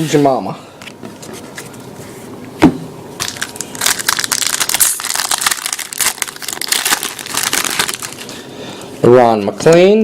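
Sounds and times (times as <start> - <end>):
wrapper crinkling being torn open: 3.2 - 8.4.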